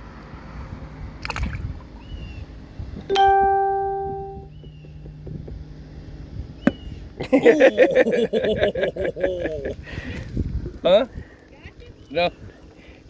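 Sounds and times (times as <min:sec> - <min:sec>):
single ringing note: 0:03.1 - 0:04.5
faint high chirps: 0:03.1 - 0:04.6.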